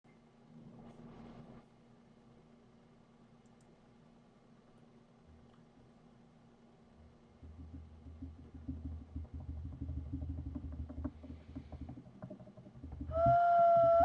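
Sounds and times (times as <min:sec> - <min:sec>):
flute long note: 0:13.1 - 0:14.0.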